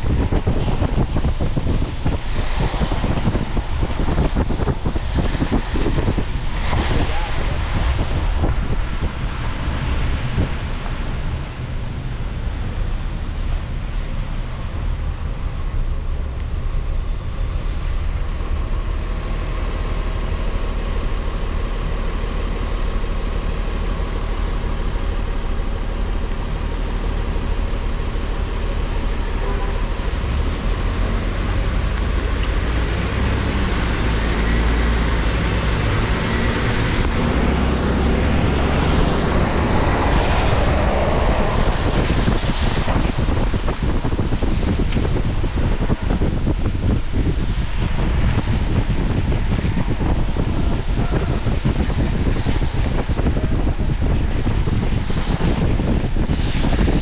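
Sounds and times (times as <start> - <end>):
car engine and road rumble: 0.0 - 57.0.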